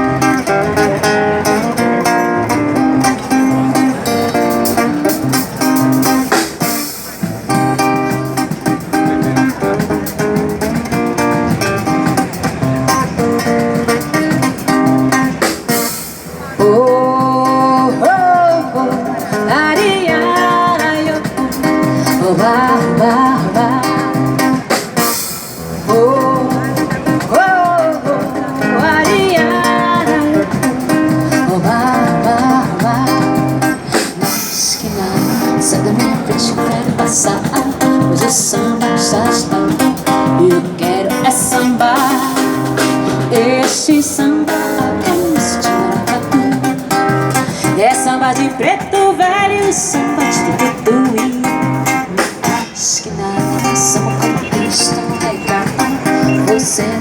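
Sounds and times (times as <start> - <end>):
acoustic guitar strumming: 0.0 - 57.0
woman vocalizing wordlessly: 25.8 - 57.0.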